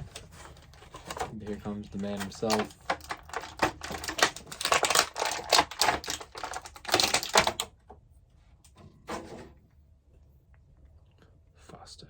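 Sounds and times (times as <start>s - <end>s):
plastic packaging crackling: 0.0s - 7.7s.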